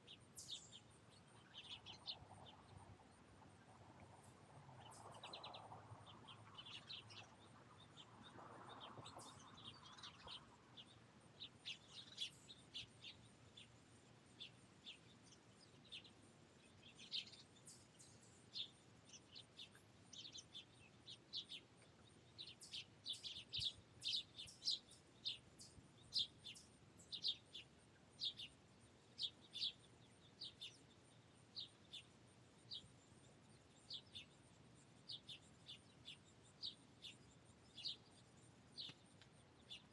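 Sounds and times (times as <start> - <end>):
finches chirping: 8.7 - 13.7, 14.3 - 39.9.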